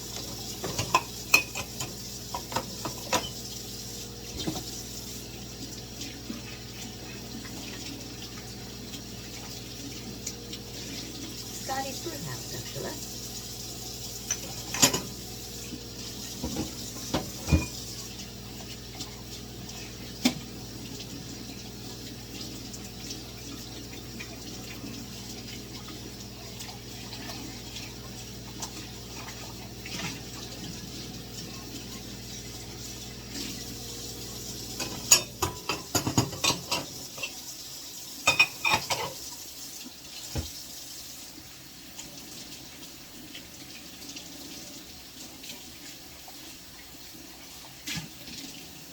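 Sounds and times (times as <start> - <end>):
water running from a tap: 0.0 - 48.9
dishes and cutlery clinking: 0.6 - 3.4, 14.2 - 15.1, 16.4 - 17.8, 38.3 - 39.2.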